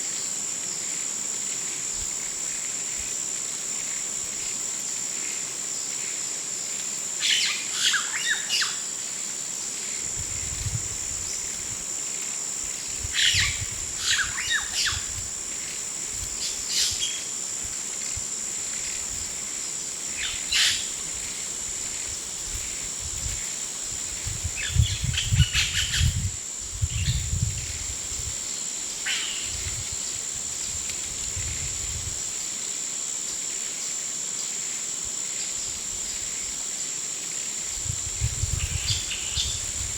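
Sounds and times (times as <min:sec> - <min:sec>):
high-pitched insect drone: 0:01.6 - 0:39.9.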